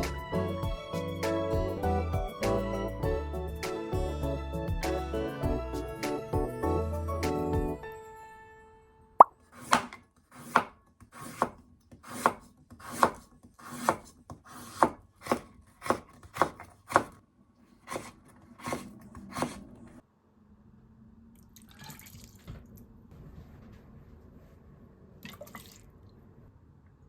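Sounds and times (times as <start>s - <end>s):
knife chopping on cutting board: 9.6s - 17.2s, 17.9s - 19.6s.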